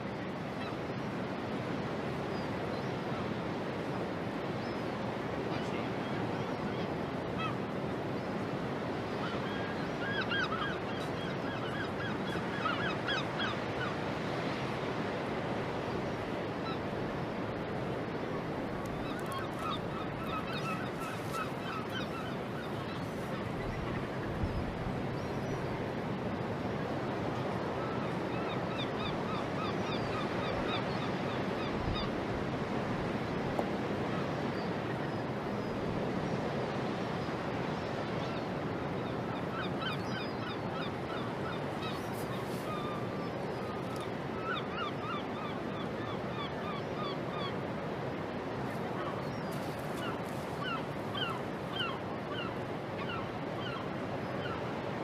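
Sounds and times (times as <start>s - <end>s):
birds chirping: 19.0s - 25.6s.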